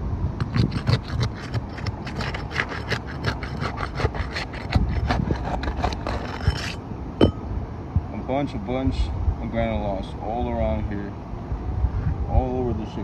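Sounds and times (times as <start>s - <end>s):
scraping on asphalt shingle: 0.4s - 7.4s.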